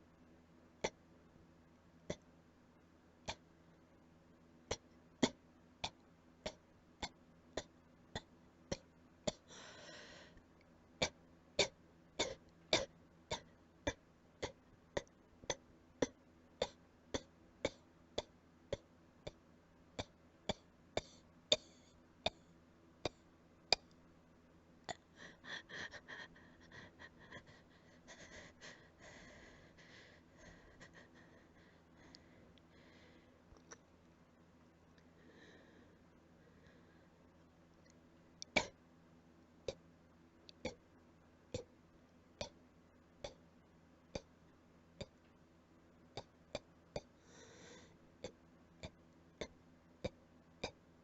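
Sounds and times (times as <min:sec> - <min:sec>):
rough breathy noises: 0:47.2 - 0:48.0.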